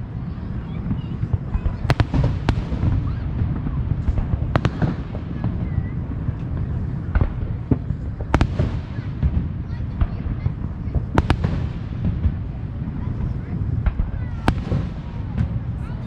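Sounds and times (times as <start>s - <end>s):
distant firework booms: 0.0s - 16.0s
sharp firework bangs: 0.8s - 16.0s.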